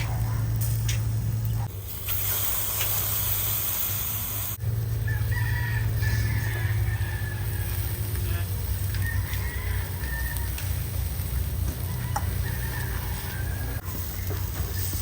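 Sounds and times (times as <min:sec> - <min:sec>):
steady low hum: 0:00.0 - 0:02.3, 0:04.1 - 0:15.0
hiss: 0:01.9 - 0:04.6
rooster crowing: 0:04.9 - 0:11.0, 0:11.6 - 0:13.9.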